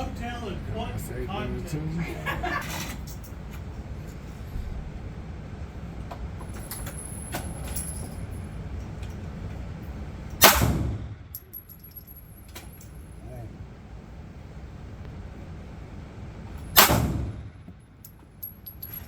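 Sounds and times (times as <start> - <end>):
steady low rumble: 0.0 - 19.0
pistol shot: 10.4 - 11.2, 16.8 - 17.5.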